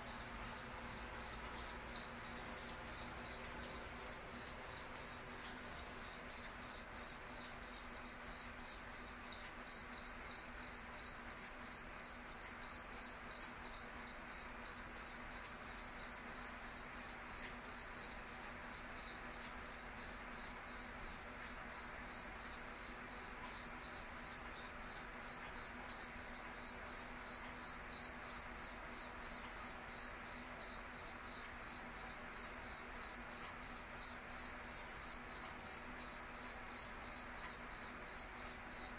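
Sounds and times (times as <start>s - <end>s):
cricket chirping: 0.0s - 38.9s.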